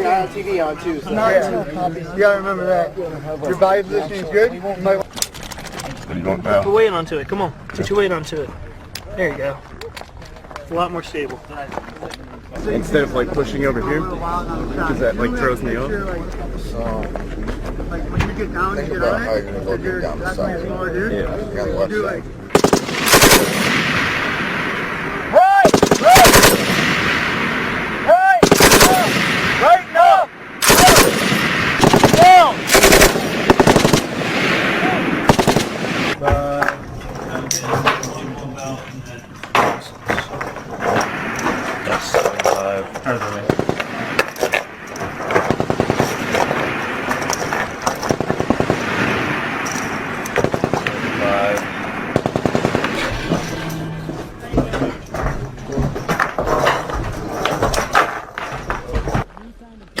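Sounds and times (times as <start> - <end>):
machine gun bursts: 22.5 - 24.0, 25.7 - 27.1, 28.4 - 29.6, 30.6 - 34.4, 35.3 - 36.1, 45.2 - 46.7, 47.9 - 49.2, 49.8 - 51.0, 52.2 - 53.4
gunfire echo: 22.5 - 36.2, 43.4 - 53.6.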